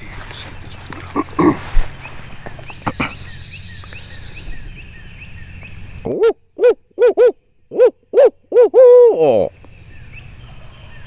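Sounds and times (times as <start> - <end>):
owl call hoots: 6.1 - 9.3.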